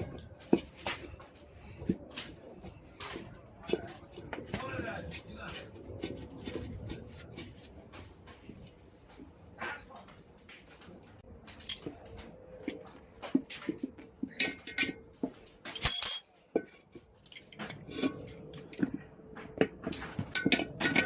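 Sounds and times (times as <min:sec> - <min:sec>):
metal tools scraping wheel rim: 0:13.7 - 0:19.1.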